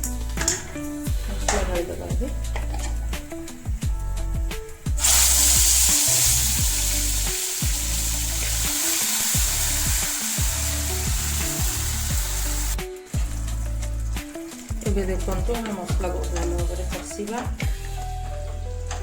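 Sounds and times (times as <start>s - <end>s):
background music with bass line: 0.0s - 19.0s
paste sizzling in hot oil: 4.8s - 19.0s.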